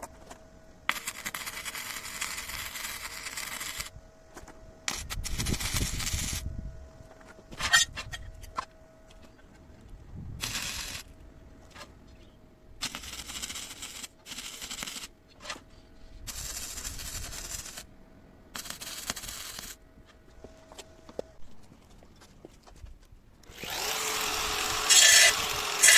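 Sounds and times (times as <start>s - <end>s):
welder arc noise bursts: 0.9s - 3.9s, 4.9s - 6.5s, 10.4s - 11.1s, 12.8s - 15.1s, 16.3s - 17.9s, 18.5s - 19.8s, 23.5s - 25.9s.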